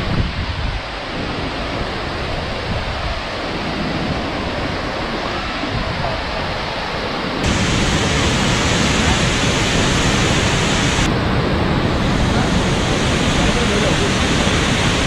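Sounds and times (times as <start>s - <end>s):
waterfall roaring: 7.4s - 15.0s.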